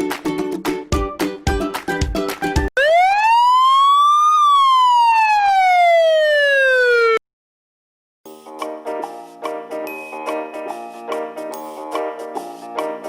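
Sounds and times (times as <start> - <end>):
music: 0.0 - 2.7, 8.3 - 13.0
siren wail: 2.8 - 7.2.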